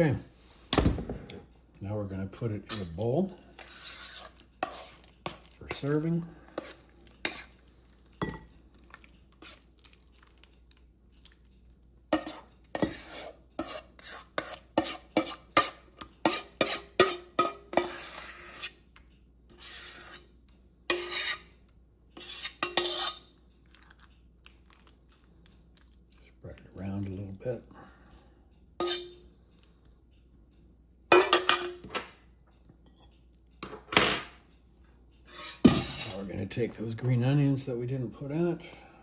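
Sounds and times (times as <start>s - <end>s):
spoon scraping a bowl: 2.6s - 8.6s, 9.3s - 9.7s, 12.1s - 24.0s, 28.8s - 29.3s, 35.2s - 36.3s.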